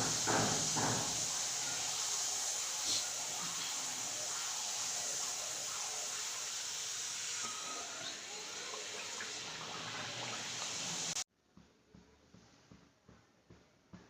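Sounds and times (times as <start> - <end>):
papad sizzling in hot oil: 0.0 - 11.2.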